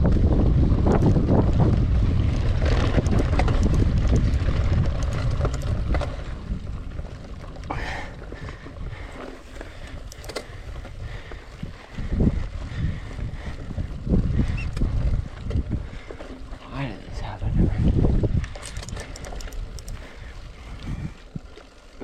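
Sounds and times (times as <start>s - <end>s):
wind buffeting microphone: 0.0s - 21.6s
bike knocks and rattles: 0.1s - 7.8s, 9.1s - 11.4s.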